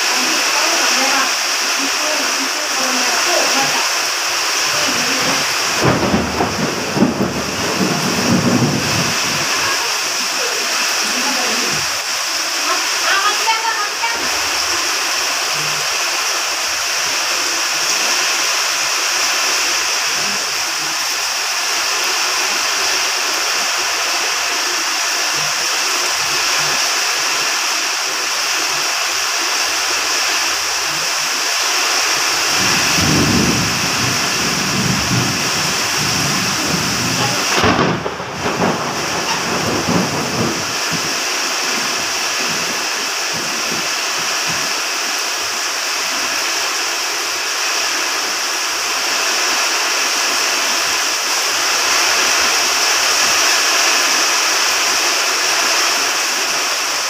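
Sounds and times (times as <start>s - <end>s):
heavy rain pouring: 0.0s - 57.0s
thunder rumbling and cracking: 4.6s - 10.4s, 32.5s - 44.6s.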